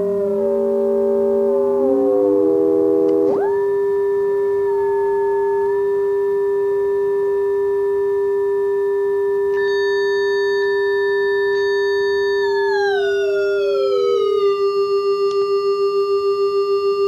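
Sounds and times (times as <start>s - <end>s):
high tones sliding down: 0.0s - 6.1s
steady electronic tone: 0.0s - 16.4s.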